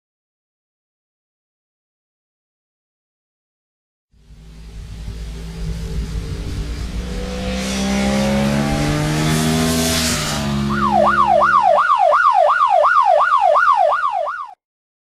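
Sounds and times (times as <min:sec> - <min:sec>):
vehicle engine revving: 0:04.2 - 0:11.8
yelp siren: 0:10.3 - 0:14.6.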